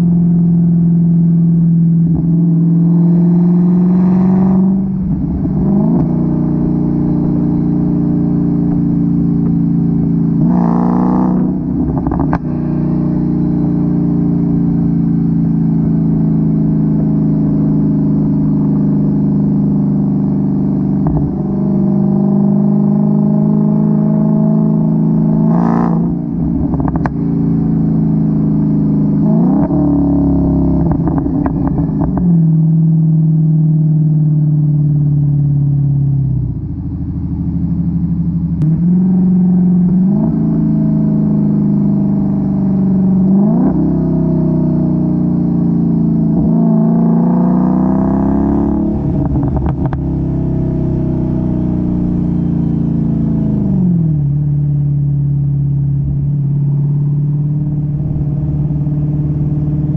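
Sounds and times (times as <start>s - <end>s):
car engine revving: 0.0s - 59.9s
exhaust crackles and pops: 26.6s - 27.2s, 30.8s - 32.2s, 49.1s - 50.1s.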